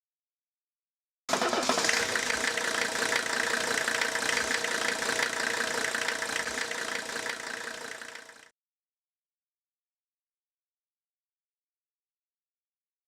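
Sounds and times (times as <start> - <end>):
diesel engine idling: 1.3 - 8.5.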